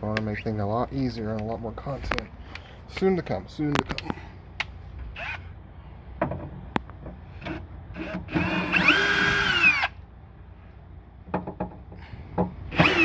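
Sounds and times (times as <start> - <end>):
power drill whine: 5.2 - 5.4, 7.4 - 10.0, 12.7 - 13.0.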